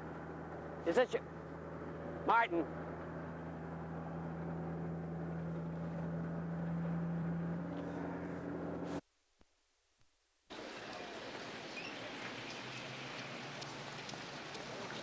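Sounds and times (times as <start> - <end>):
car engine droning: 3.1 - 9.0
background noise: 8.8 - 15.0.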